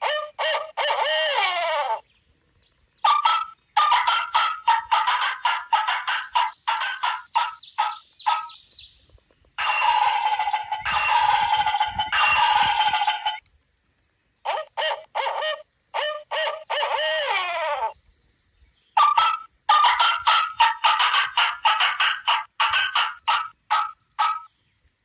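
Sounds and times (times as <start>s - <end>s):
turkey gobbling: 0.0s - 2.0s, 3.0s - 8.6s, 9.6s - 13.4s, 14.4s - 18.0s, 19.0s - 24.5s.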